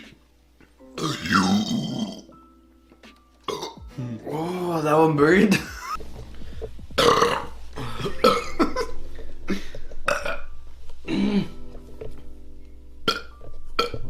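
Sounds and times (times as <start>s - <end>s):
man burping: 1.0s - 2.3s, 3.5s - 4.5s, 7.0s - 9.0s, 10.1s - 10.5s, 11.1s - 11.6s.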